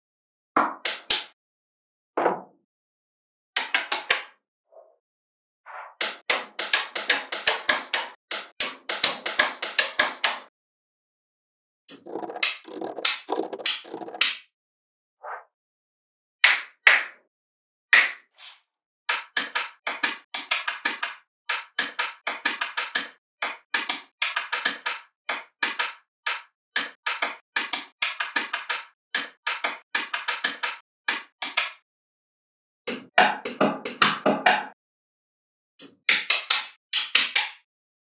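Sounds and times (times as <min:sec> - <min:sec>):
magnetic balls clicking together: 0:11.9 - 0:14.3, 0:19.1 - 0:31.8.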